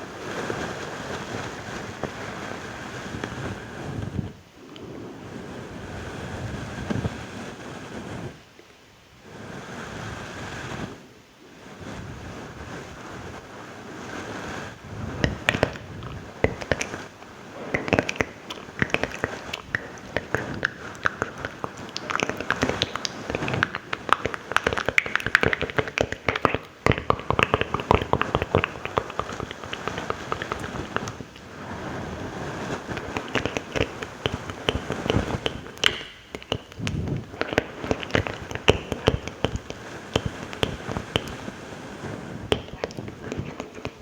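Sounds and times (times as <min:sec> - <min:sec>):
soft hiss: 0:00.0 - 0:44.0
wet mouth clicks and smacks: 0:15.2 - 0:41.5, 0:42.4 - 0:44.0.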